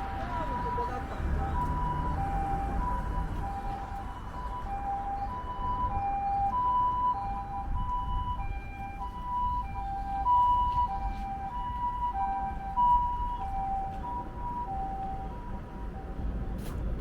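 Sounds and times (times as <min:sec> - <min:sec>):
two-tone ambulance siren: 0:00.0 - 0:16.5
low traffic rumble: 0:00.0 - 0:17.0.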